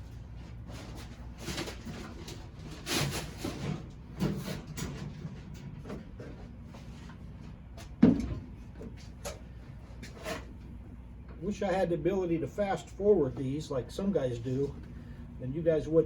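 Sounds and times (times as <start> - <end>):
scraping and rustling of rubber gasket: 0.1 - 7.2, 8.9 - 10.8.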